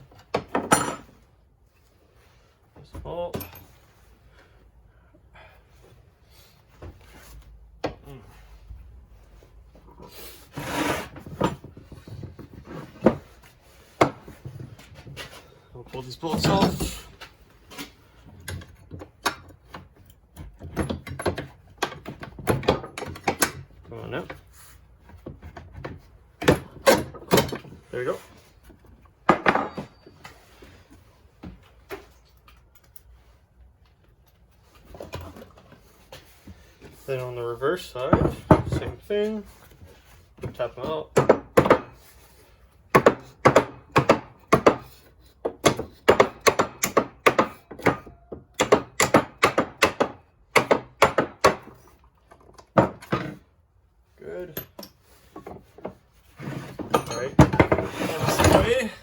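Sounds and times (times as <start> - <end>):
metal tools clattering on workbench: 0.3 - 1.2, 29.3 - 30.1, 56.6 - 59.0
hand tools scraping metal: 54.6 - 59.0.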